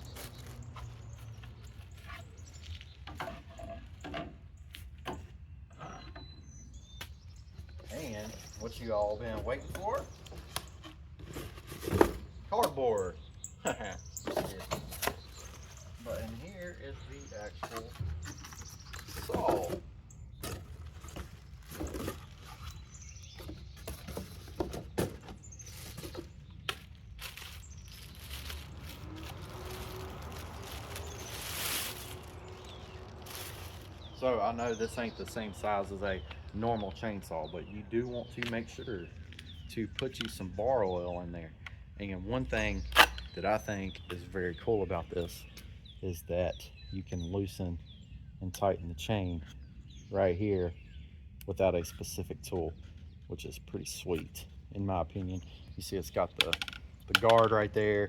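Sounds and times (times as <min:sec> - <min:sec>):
cardboard scraping and rustling: 0:10.4 - 0:12.3, 0:20.4 - 0:26.4.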